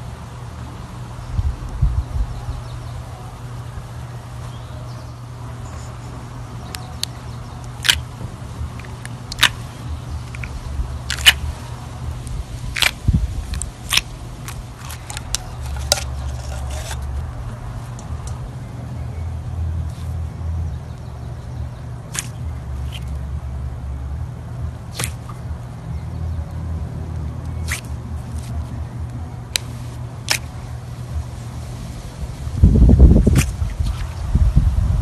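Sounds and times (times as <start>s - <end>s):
low hum: 0.0s - 35.0s
slime popping and clicking: 25.0s - 25.2s.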